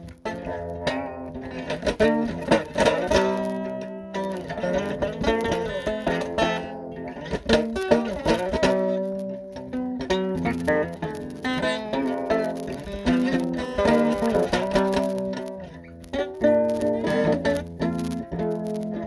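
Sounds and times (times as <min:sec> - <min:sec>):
plucked guitar notes and chords: 0:00.0 - 0:19.0.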